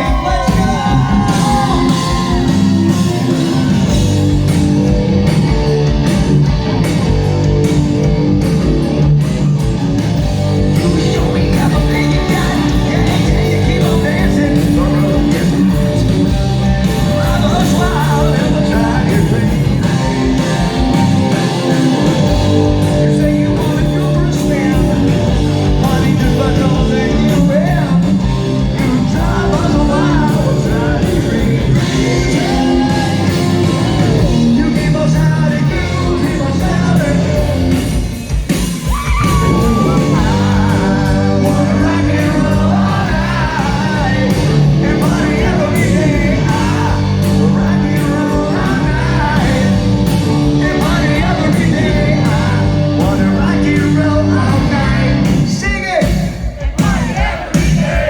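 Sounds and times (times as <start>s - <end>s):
person shouting: 0.0s - 2.6s
sung lead vocal: 0.0s - 5.0s, 10.3s - 58.0s
live rock band playing: 0.0s - 58.0s
loud drums: 0.0s - 58.0s.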